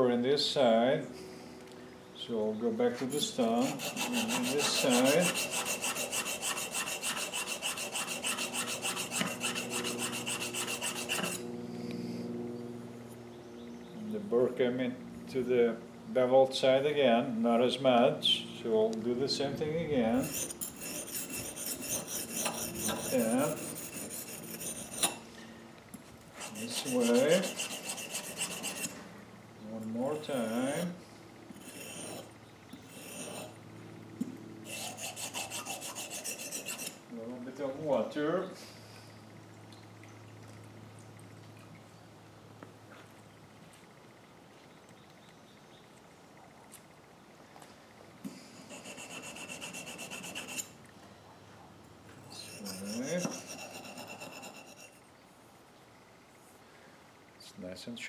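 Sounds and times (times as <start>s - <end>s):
low steady hum: 0.0s - 58.0s
blade rubbed on whetstone: 3.1s - 11.5s, 20.1s - 25.2s, 26.4s - 29.0s, 31.6s - 33.6s, 34.6s - 37.0s, 48.6s - 50.7s, 52.3s - 55.0s.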